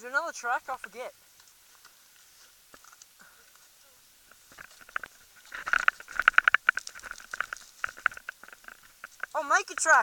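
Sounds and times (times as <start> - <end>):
bike clicking and rattling: 4.3 - 10.0.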